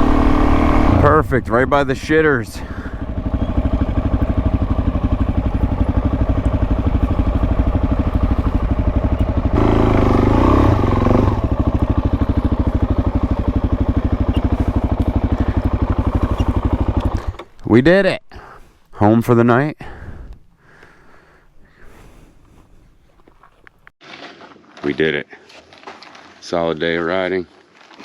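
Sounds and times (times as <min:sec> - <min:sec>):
motorcycle engine idling: 0:00.0 - 0:17.6.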